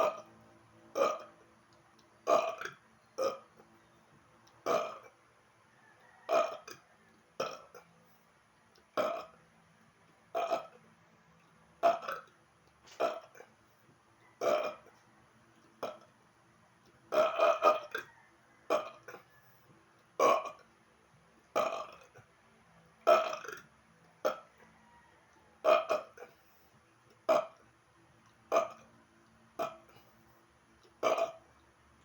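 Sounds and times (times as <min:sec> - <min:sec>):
man burping: 0:00.9 - 0:01.4, 0:02.2 - 0:03.6, 0:04.6 - 0:05.2, 0:06.3 - 0:06.8, 0:07.4 - 0:07.9, 0:08.9 - 0:09.4, 0:10.3 - 0:10.8, 0:11.8 - 0:13.5, 0:14.4 - 0:14.9, 0:17.1 - 0:19.3, 0:20.2 - 0:20.6, 0:21.6 - 0:22.2, 0:23.0 - 0:24.5, 0:25.6 - 0:26.4, 0:27.2 - 0:27.6, 0:29.6 - 0:30.1, 0:31.0 - 0:31.5.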